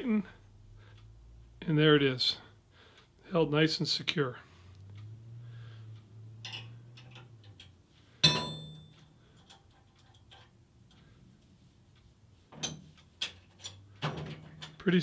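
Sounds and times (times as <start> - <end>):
light metallic clicks and taps: 5.9 - 15.0
sharp ringing metal clink: 8.2 - 9.0.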